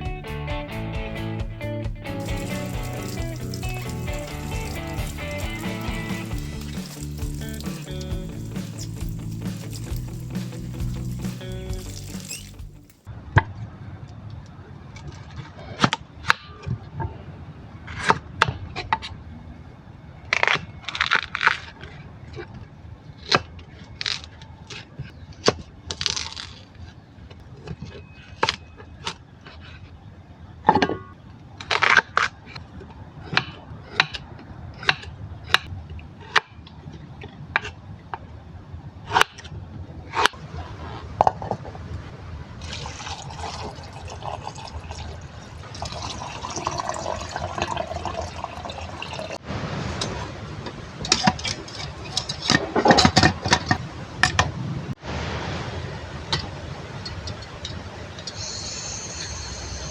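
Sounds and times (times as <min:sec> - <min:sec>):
husk scraping and rustling: 0:02.1 - 0:13.1.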